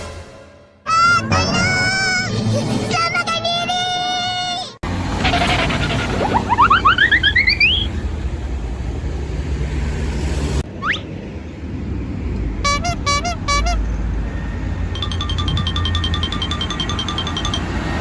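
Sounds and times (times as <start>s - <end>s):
low engine rumble: 4.8s - 18.0s
multi-tone bus horn: 5.0s - 8.2s, 12.6s - 14.6s
rising whistle: 5.2s - 8.2s
rising whoop alarm: 6.1s - 7.9s.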